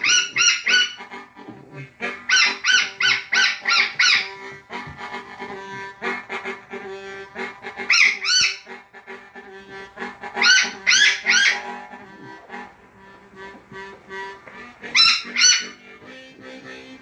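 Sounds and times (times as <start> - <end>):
blues harmonica chords: 0.0 - 17.0
parrot calls: 0.0 - 17.0.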